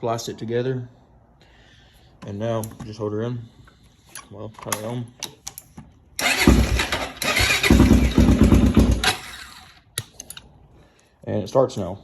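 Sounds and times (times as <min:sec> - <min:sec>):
quad engine starting and running: 0:06.2 - 0:09.9.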